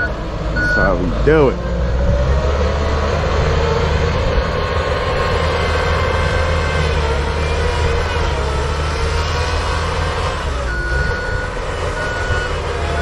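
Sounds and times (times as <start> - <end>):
backup alarm beeps: 0.0 - 0.9, 10.7 - 13.0
loader engine running: 0.0 - 13.0.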